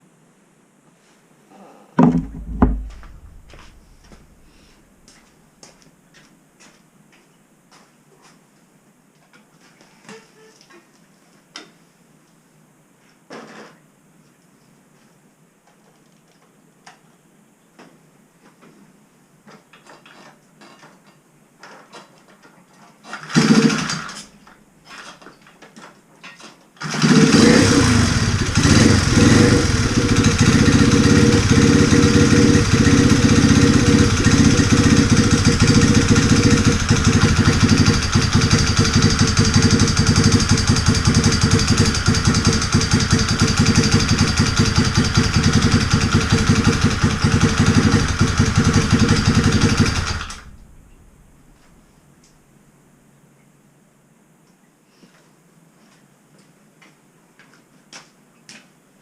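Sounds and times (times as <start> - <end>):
motorcycle engine starting and idling: 2.0 - 4.8, 23.1 - 24.2, 26.8 - 51.8.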